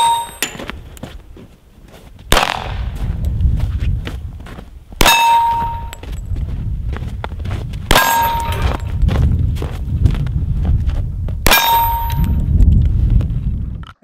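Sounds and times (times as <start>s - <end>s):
steel plate clanging: 0.0s - 0.7s, 5.0s - 6.1s, 7.9s - 8.9s, 11.5s - 12.4s
gunshots: 2.3s - 3.0s, 7.9s - 8.8s.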